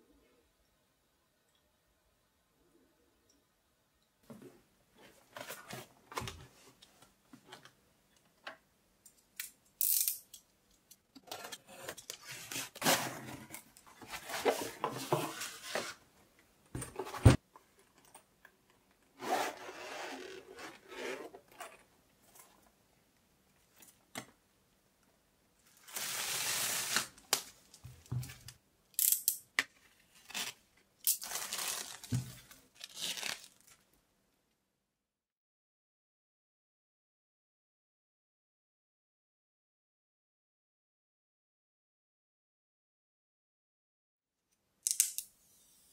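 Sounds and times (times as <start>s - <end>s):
packaging tearing and crinkling: 30.2s - 33.8s.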